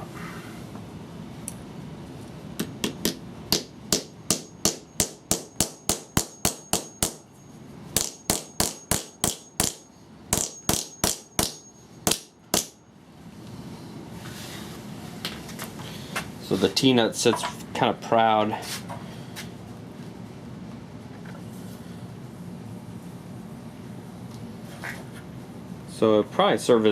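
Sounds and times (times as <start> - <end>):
high metallic ring: 6.3 - 7.6, 8.2 - 12.0.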